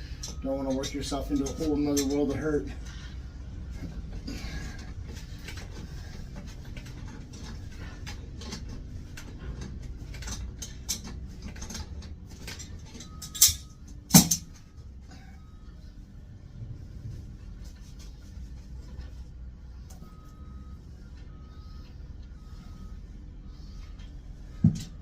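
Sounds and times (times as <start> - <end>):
metal tools clicking on pipe: 0.2 - 2.5, 7.3 - 14.6
sharp ringing metal clanks: 13.0 - 14.6.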